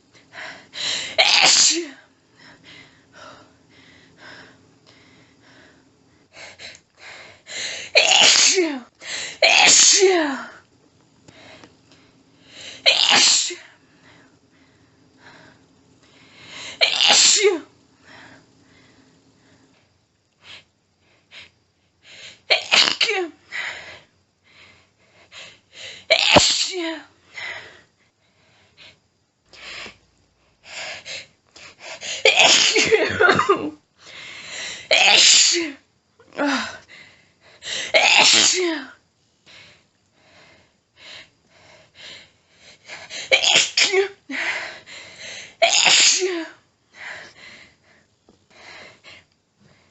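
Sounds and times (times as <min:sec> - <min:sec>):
woman panting: 0:00.1 - 0:01.2, 0:01.8 - 0:08.0, 0:08.6 - 0:09.4, 0:11.3 - 0:12.8, 0:13.5 - 0:16.8, 0:18.0 - 0:19.0, 0:20.4 - 0:22.5, 0:23.4 - 0:26.1, 0:26.8 - 0:30.0, 0:30.6 - 0:33.4, 0:34.0 - 0:34.9, 0:36.3 - 0:38.0, 0:39.5 - 0:43.3, 0:44.2 - 0:45.6, 0:46.2 - 0:49.9
woman sneezing: 0:01.2 - 0:02.0, 0:08.0 - 0:10.4, 0:12.8 - 0:13.6, 0:16.8 - 0:17.7, 0:22.5 - 0:23.4, 0:26.1 - 0:27.1, 0:32.1 - 0:33.8, 0:34.9 - 0:35.8, 0:37.9 - 0:39.0, 0:43.3 - 0:44.2, 0:45.6 - 0:46.6.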